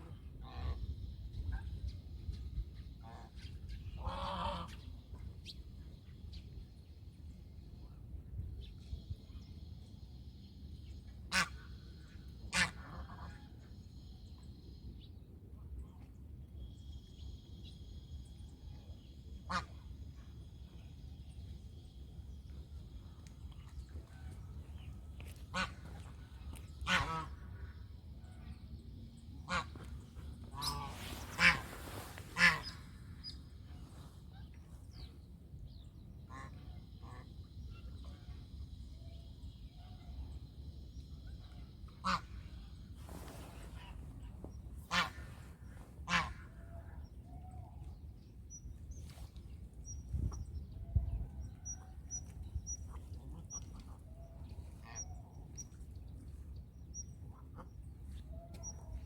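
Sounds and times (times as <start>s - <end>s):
low background rumble: 0.1s - 59.0s
goose honking: 26.8s - 27.4s, 30.5s - 32.8s, 44.9s - 45.2s.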